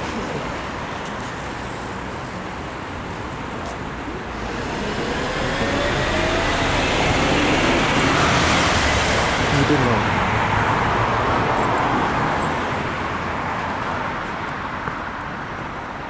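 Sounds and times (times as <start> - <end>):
steady rushing traffic noise: 0.0 - 16.0
motor vehicle engine: 4.0 - 11.0.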